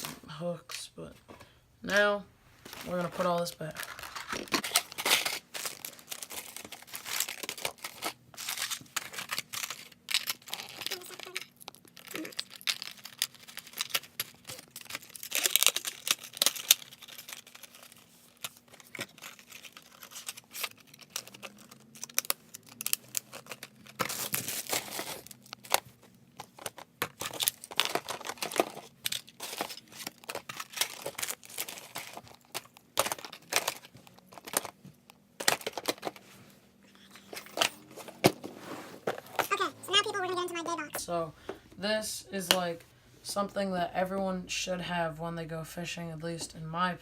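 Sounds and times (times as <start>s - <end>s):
plastic packaging crinkling: 2.6s - 36.2s, 39.0s - 41.2s
clicks and knocks of hard items: 18.4s - 36.2s.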